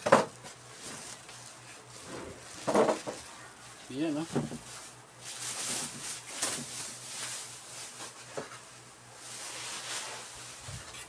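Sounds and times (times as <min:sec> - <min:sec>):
packaging rustling: 0:00.0 - 0:08.6.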